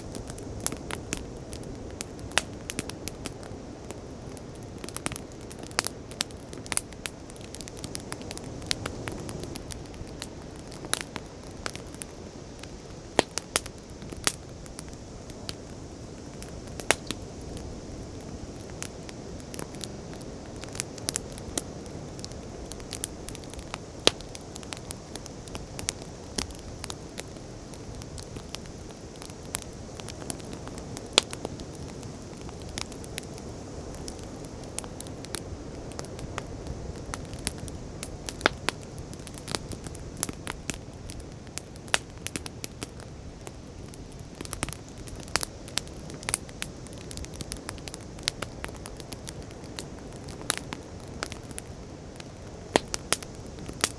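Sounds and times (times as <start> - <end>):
wood bonfire crackling: 0.0 - 53.9
sharp pops and snaps: 16.4 - 17.2, 52.7 - 53.9.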